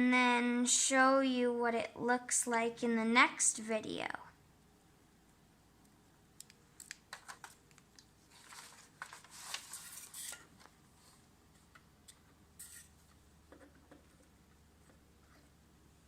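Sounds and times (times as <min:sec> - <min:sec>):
rustle of small objects: 0:06.8 - 0:11.3.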